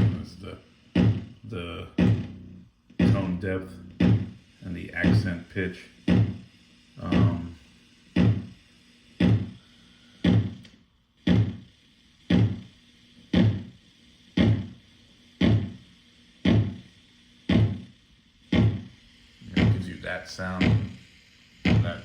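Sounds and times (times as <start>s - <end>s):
kick drum thump with click: 1.0s - 1.4s, 2.0s - 2.4s, 3.0s - 4.4s, 6.0s - 6.5s, 7.1s - 7.5s, 8.1s - 8.6s, 9.2s - 9.6s, 10.2s - 10.6s, 11.3s - 11.7s, 12.3s - 12.7s, 13.3s - 13.8s, 14.4s - 14.8s, 15.4s - 15.8s, 16.4s - 16.9s, 17.5s - 17.9s, 18.5s - 18.9s, 19.6s - 19.9s, 20.6s - 21.0s, 21.6s - 22.0s.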